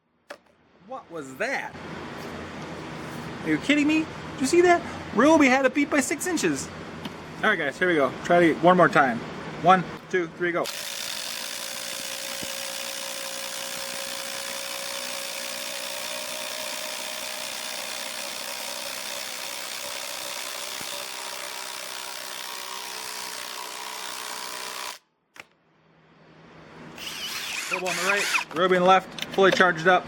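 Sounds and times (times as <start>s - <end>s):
impact drivers driving screws: 10.7s - 25.0s, 27.0s - 28.6s.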